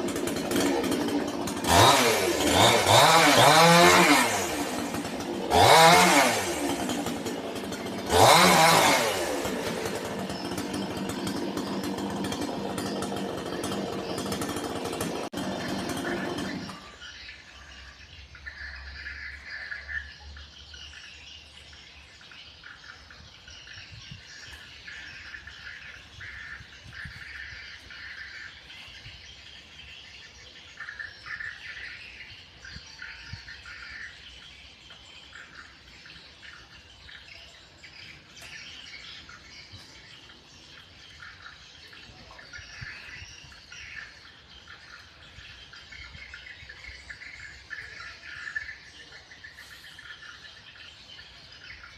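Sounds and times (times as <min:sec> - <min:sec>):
birds chirping: 0:00.0 - 0:51.9.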